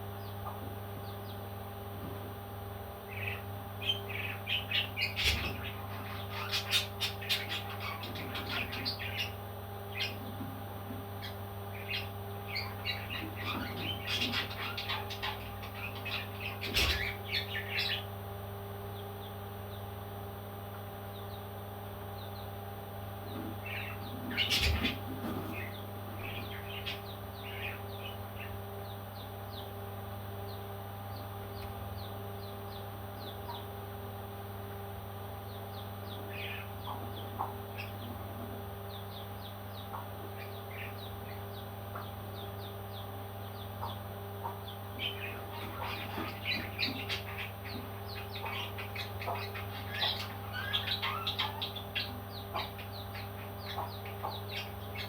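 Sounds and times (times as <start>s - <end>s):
steady low hum: 0.0s - 55.0s
baby parrots chirping: 3.1s - 9.4s, 11.2s - 18.0s, 23.7s - 28.6s, 44.6s - 55.0s.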